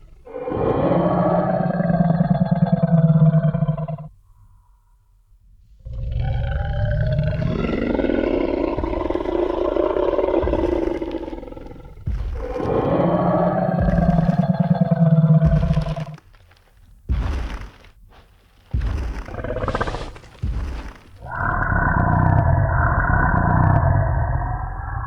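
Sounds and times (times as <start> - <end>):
dinosaur roaring: 0.0 - 4.1, 5.8 - 16.2, 18.7 - 25.0
heavy thud: 8.8 - 21.3.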